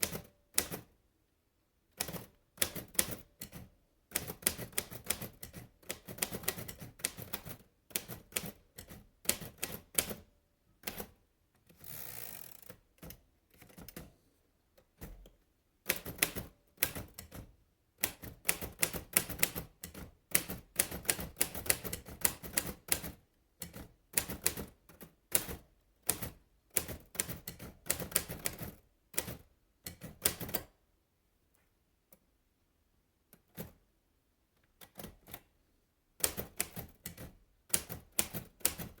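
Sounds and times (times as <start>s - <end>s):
typewriter keys clicking: 0.0s - 0.9s, 2.0s - 11.2s, 15.0s - 30.7s, 36.2s - 39.0s.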